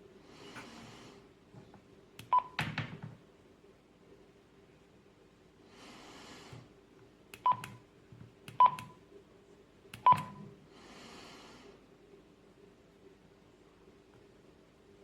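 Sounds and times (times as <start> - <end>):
radio keypad beeps: 7.4 - 7.8, 8.6 - 9.0, 10.0 - 10.4.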